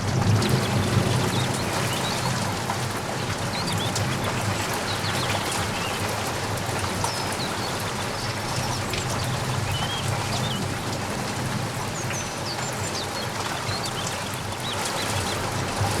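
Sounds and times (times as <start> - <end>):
rain pattering: 0.0 - 16.0.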